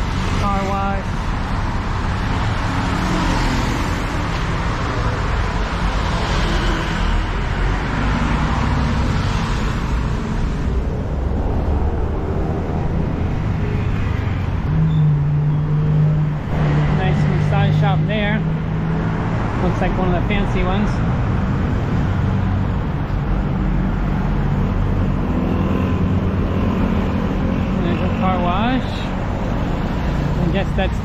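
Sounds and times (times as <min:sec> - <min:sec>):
passing road traffic: 0:00.0 - 0:31.0.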